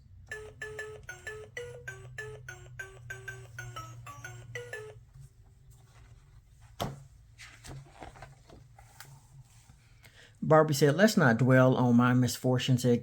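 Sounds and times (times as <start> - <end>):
electronic tune from toy speaker: 0.3 - 5.0.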